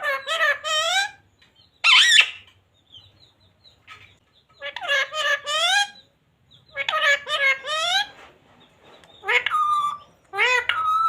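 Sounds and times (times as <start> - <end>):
parrot squawking: 0.0 - 1.2, 1.8 - 2.5, 4.6 - 6.0, 6.6 - 8.2, 9.2 - 11.0
parrot chirping: 0.0 - 8.2, 9.1 - 11.0.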